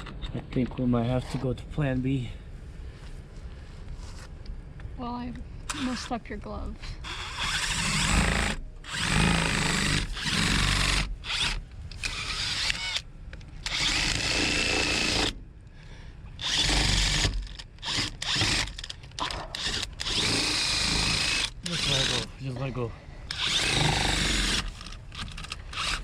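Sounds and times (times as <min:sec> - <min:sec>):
cordless drill drilling into metal: 0:05.7 - 0:06.2, 0:07.0 - 0:13.0, 0:13.6 - 0:15.4, 0:16.4 - 0:22.3, 0:23.3 - 0:26.0.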